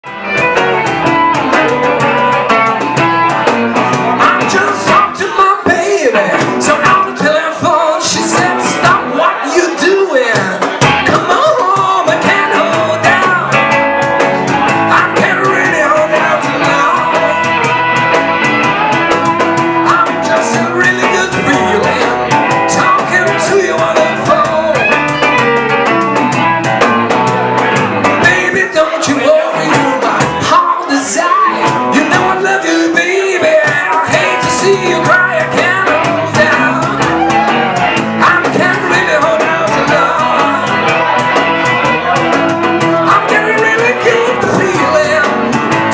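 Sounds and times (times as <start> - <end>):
live rock and roll band: 0.0 - 45.9
person singing: 0.0 - 45.9.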